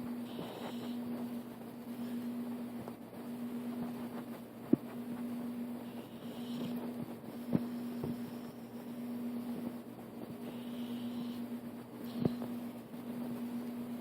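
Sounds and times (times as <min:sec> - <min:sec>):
steady hum: 0:00.0 - 0:14.0
dog snoring softly: 0:00.3 - 0:01.0, 0:05.8 - 0:06.8, 0:10.4 - 0:12.6.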